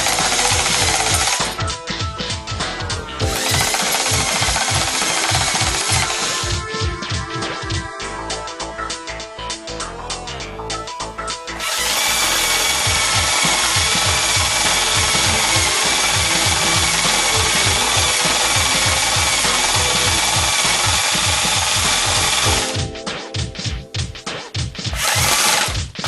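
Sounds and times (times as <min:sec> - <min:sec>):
power tool grinding wood: 0:00.0 - 0:01.6, 0:03.2 - 0:06.5, 0:11.6 - 0:22.7, 0:25.0 - 0:25.8
background music: 0:00.0 - 0:26.0.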